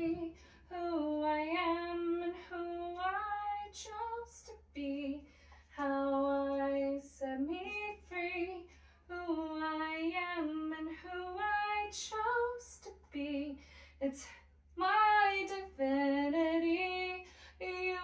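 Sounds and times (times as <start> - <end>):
steady low hum: 0.0 - 18.0
woman singing unaccompanied: 0.0 - 18.0
singer breathing: 13.6 - 14.0, 17.2 - 17.6.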